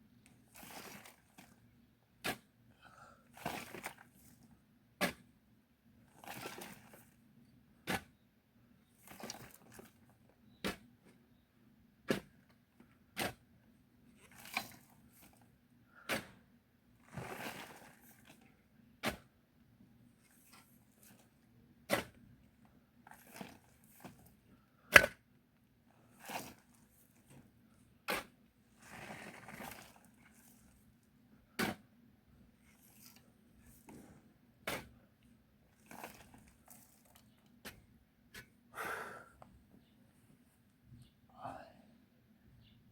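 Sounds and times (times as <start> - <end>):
loose soil scraping: 0.4 - 2.5, 3.4 - 5.3, 6.2 - 7.2, 8.9 - 11.0, 13.1 - 13.5, 14.1 - 19.4, 20.1 - 25.2, 26.0 - 38.5
digging tool striking hard soil: 5.0 - 5.3, 12.1 - 12.3, 16.0 - 16.4, 19.0 - 19.3, 21.9 - 22.2, 24.9 - 25.2, 28.1 - 29.8, 31.6 - 31.8, 33.9 - 35.0.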